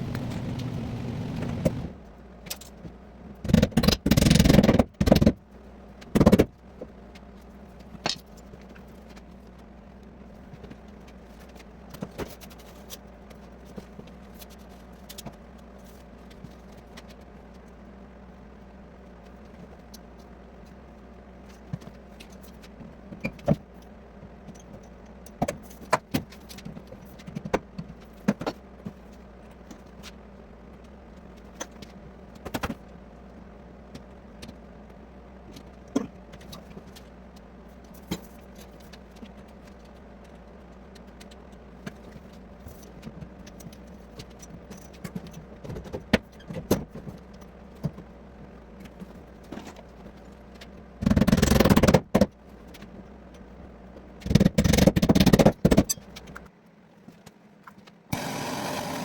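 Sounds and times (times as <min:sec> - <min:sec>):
steady low hum: 0:00.0 - 0:02.2.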